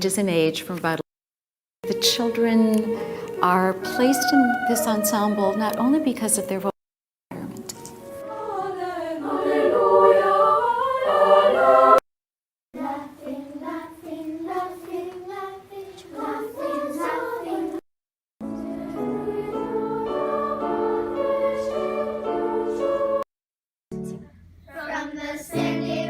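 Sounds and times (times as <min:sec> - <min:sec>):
children's choir singing: 0:01.8 - 0:06.6, 0:08.0 - 0:12.0, 0:12.8 - 0:17.8, 0:18.4 - 0:23.2, 0:24.7 - 0:26.0.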